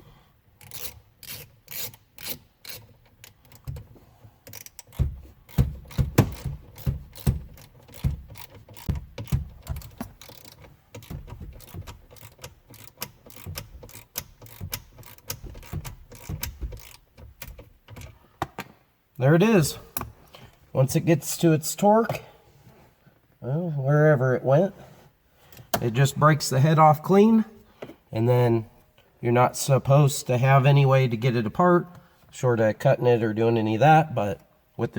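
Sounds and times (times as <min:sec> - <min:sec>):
hand ratchet clicking: 0:00.6 - 0:18.2.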